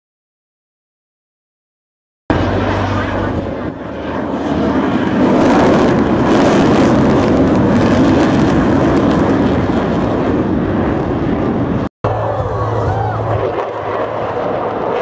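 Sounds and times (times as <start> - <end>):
jet aircraft flying past: 2.3 - 15.0.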